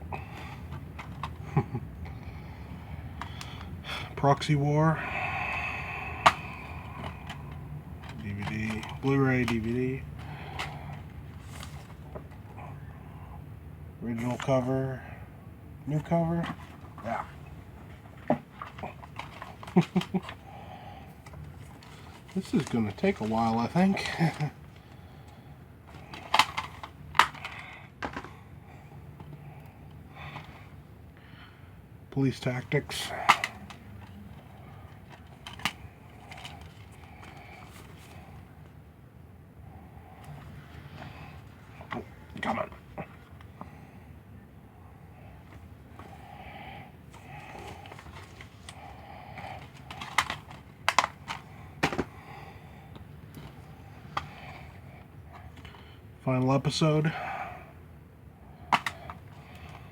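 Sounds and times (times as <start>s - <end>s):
plastic cases clicking: 0.5s - 1.7s, 6.1s - 12.5s, 16.4s - 20.4s, 21.1s - 28.3s, 32.6s - 38.2s, 47.1s - 52.2s, 58.7s - 59.9s
faint plastic rustling: 5.8s - 12.9s, 15.9s - 28.4s, 32.2s - 38.8s, 45.0s - 57.4s.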